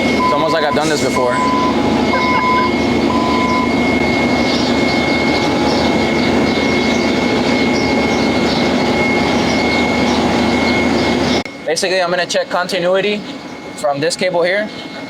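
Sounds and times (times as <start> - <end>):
forklift warning alarm beeping: 0.0 - 11.7
forklift engine drone and whine: 0.0 - 15.0.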